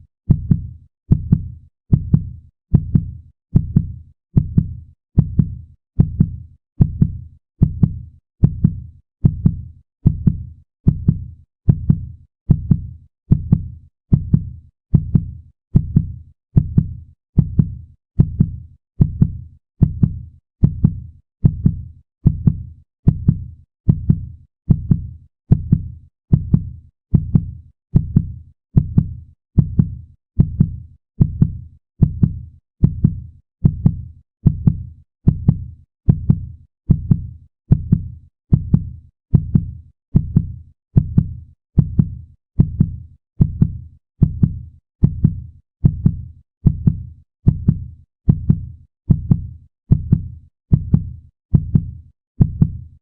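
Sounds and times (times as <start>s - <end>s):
heartbeat thumps: 0.3s - 52.8s.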